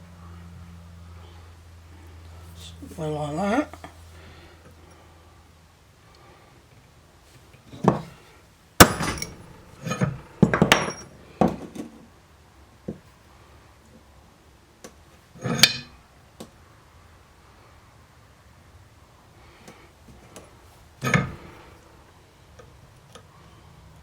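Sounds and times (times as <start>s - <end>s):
metal tools clanking on vice: 8.8s - 11.8s, 15.4s - 15.9s, 21.0s - 21.5s.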